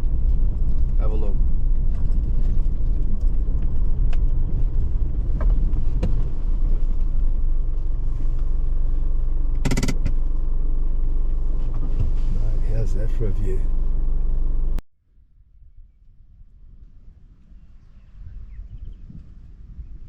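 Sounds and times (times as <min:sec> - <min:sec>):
car engine rumbling: 0:00.0 - 0:14.8.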